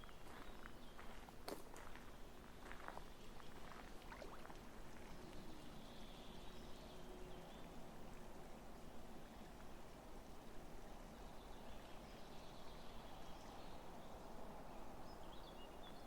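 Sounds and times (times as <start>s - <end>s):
footsteps crunching on gravel: 0.0s - 3.9s.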